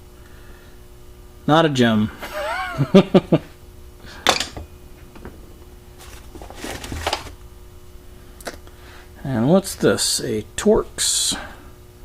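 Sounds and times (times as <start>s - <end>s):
tools clattering: 4.2s - 4.7s
tools rummaged and rustling: 4.2s - 5.4s, 6.0s - 7.4s.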